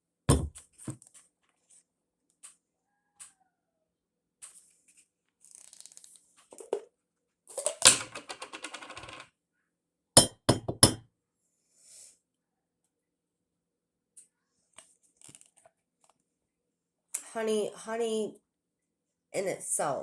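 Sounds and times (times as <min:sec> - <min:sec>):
spoon clinking on containers: 0:10.2 - 0:11.0.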